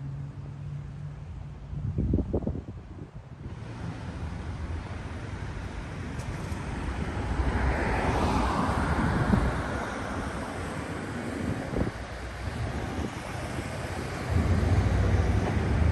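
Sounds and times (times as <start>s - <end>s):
wind buffeting microphone: 1.6s - 15.9s
vehicle passing: 3.6s - 15.9s.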